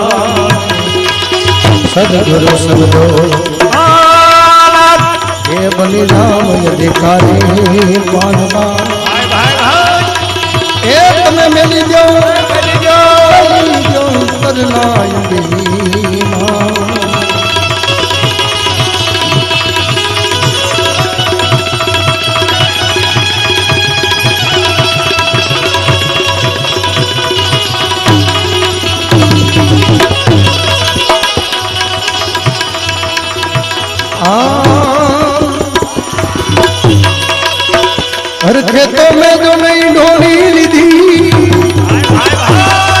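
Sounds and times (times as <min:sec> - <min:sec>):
tabla playing quick rhythm: 0:00.0 - 0:43.0.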